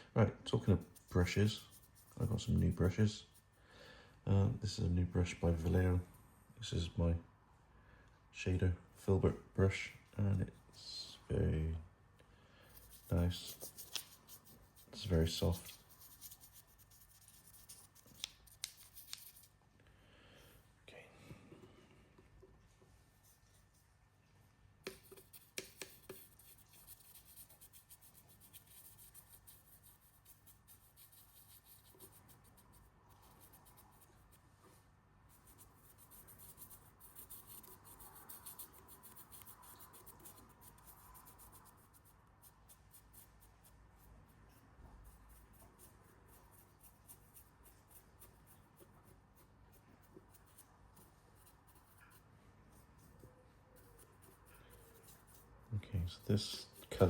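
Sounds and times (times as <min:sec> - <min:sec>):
brush scratching on plastic: 0:00.7 - 0:03.5, 0:12.7 - 0:19.6, 0:24.9 - 0:34.4, 0:35.3 - 0:57.0.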